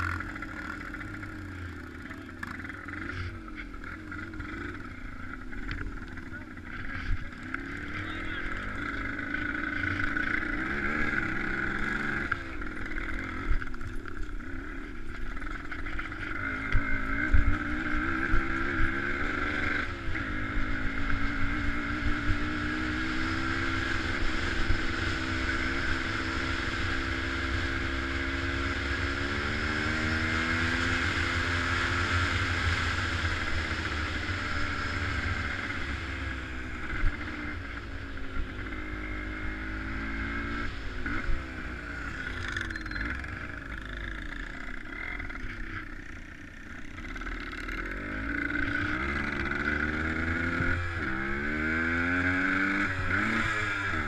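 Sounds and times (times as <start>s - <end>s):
engine revving: 0.0s - 54.0s.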